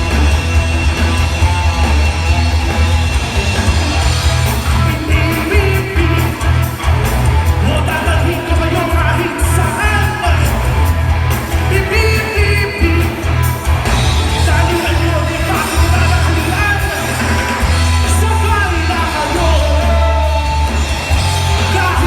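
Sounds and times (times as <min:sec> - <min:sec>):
live rock band playing: 0:00.0 - 0:22.0
lead vocal singing: 0:04.6 - 0:06.9, 0:07.5 - 0:10.9, 0:11.5 - 0:13.4, 0:14.3 - 0:22.0.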